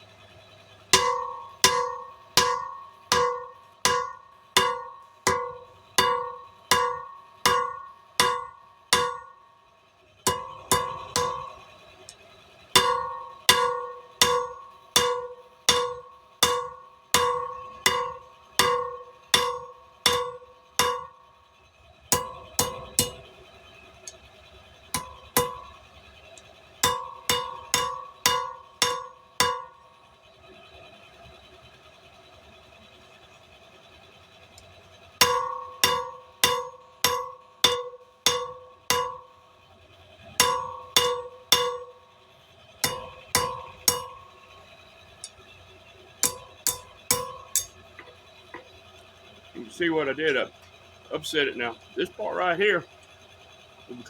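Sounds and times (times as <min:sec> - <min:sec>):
hammer ringing on anvil: 0:01.0 - 0:09.4, 0:10.3 - 0:11.7, 0:12.8 - 0:21.3, 0:22.1 - 0:23.3, 0:25.0 - 0:25.8, 0:26.8 - 0:29.8, 0:35.2 - 0:39.4, 0:40.3 - 0:42.0, 0:42.8 - 0:44.4, 0:46.2 - 0:48.7.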